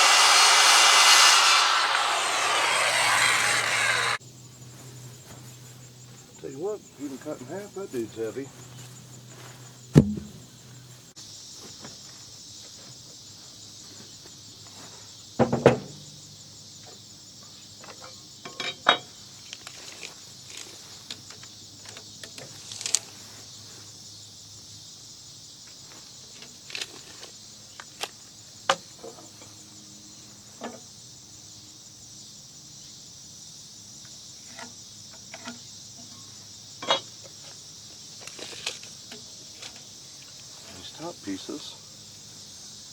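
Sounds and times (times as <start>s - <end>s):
high-pitched insect chorus: 0.0s - 42.9s
knocks and clicks of work: 10.0s - 10.4s.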